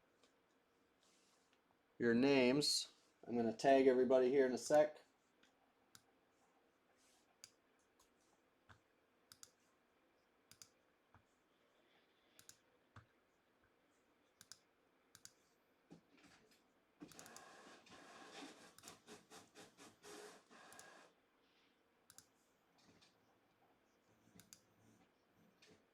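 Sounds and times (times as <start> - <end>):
faint computer clicks: 7.4 - 9.6, 10.5 - 11.3, 12.4 - 13.1, 14.4 - 15.5, 17.0 - 17.5, 22.1 - 23.2, 24.3 - 24.7
typing on computer keyboard: 17.0 - 17.5, 18.8 - 19.0, 20.7 - 21.0, 24.4 - 24.6.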